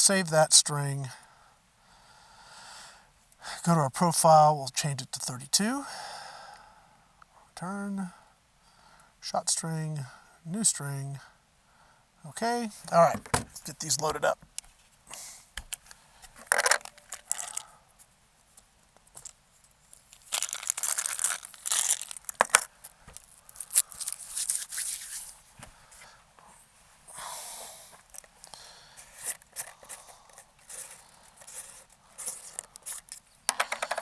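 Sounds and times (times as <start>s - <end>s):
packaging rustling and scraping: 15.7s - 17.7s, 19.1s - 25.4s, 28.0s - 33.2s.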